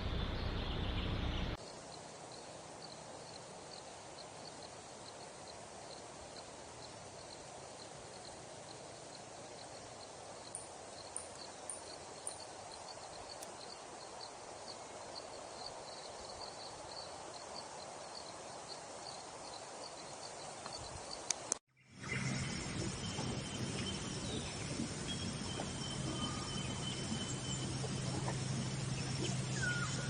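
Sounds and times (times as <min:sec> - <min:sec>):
steady hiss: 0:00.0 - 0:30.0
faint high chirp: 0:21.8 - 0:30.0.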